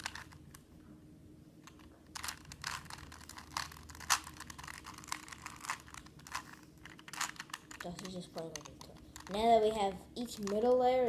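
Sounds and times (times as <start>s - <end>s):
puzzle cube clicking as turned: 0.0s - 0.4s, 1.6s - 9.4s.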